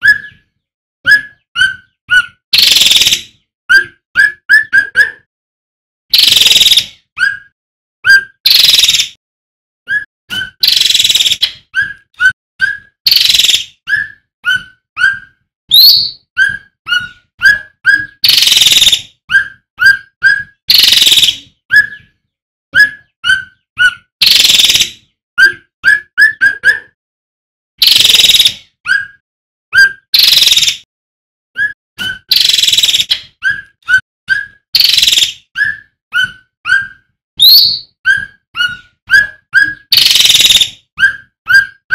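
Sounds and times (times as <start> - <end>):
bird whistled notes: 0.0 - 0.5, 9.9 - 22.2, 31.6 - 41.8.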